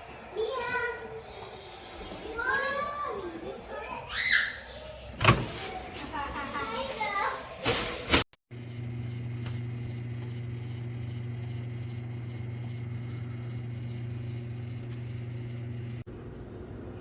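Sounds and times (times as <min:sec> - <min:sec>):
microwave oven humming: 0:08.5 - 0:17.0.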